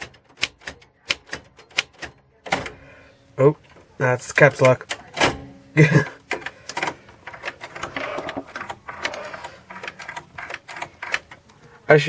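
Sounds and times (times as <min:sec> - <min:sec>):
typewriter keys clacking: 0:00.0 - 0:02.7, 0:06.3 - 0:11.5.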